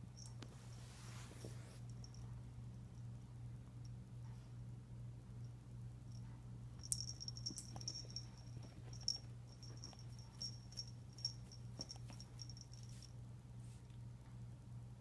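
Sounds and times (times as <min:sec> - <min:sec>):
small jingles and rattling clicks: 0:06.8 - 0:13.1.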